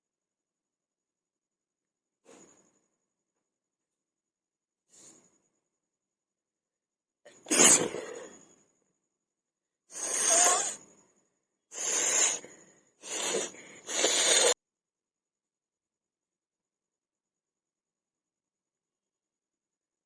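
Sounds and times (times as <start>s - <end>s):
person sneezing: 7.3s - 8.4s, 10.0s - 10.8s, 11.8s - 14.6s
person blowing nose: 7.4s - 8.3s, 9.9s - 10.8s, 11.7s - 14.6s.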